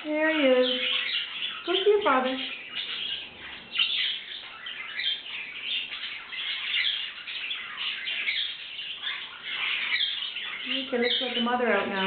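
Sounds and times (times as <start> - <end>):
small cage birds chirping: 0.0 - 12.0.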